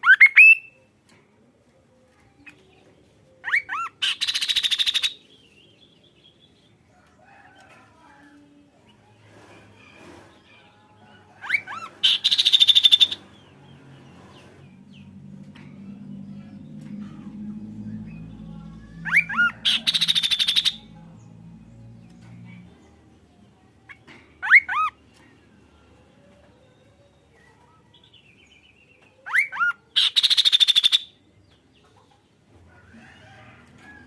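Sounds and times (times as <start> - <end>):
low steady hum: 13.1 - 24.4.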